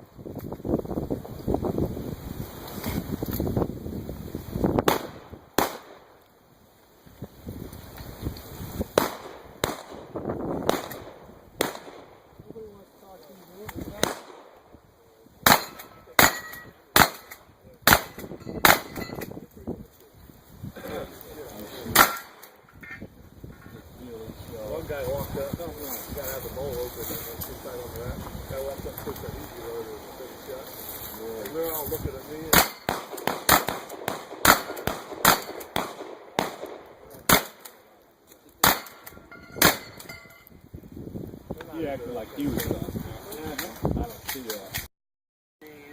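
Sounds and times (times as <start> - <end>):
shotgun shots: 4.8 - 6.1, 9.0 - 12.2, 15.4 - 19.1, 21.9 - 22.6, 32.5 - 37.7, 38.6 - 40.0.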